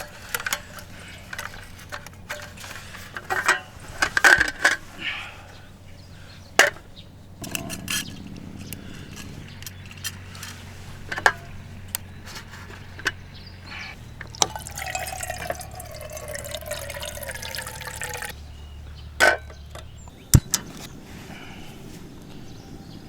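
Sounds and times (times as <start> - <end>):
liquid pouring into container: 14.4 - 18.3.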